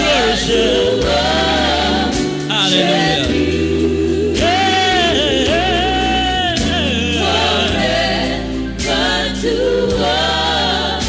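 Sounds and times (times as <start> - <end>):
choir singing held notes: 0.0 - 11.0
instrumental accompaniment: 0.0 - 11.0
person speaking: 2.5 - 3.3, 4.7 - 7.7.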